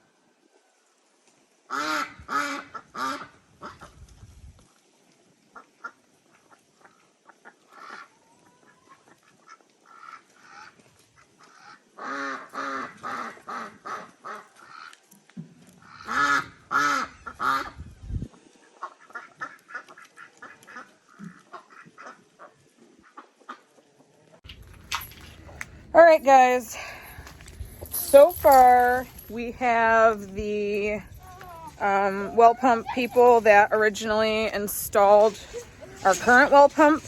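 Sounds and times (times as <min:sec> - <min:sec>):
waterfowl honking: 0:01.7 - 0:03.8, 0:15.9 - 0:17.7.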